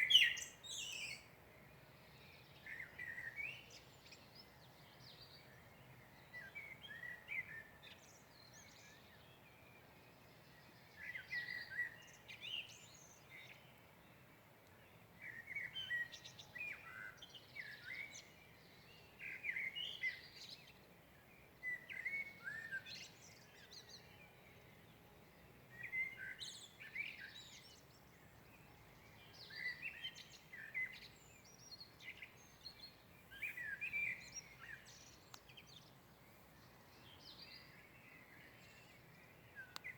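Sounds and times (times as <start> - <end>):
songbird singing: 0.0 - 39.9
faint steady hiss: 24.2 - 39.9.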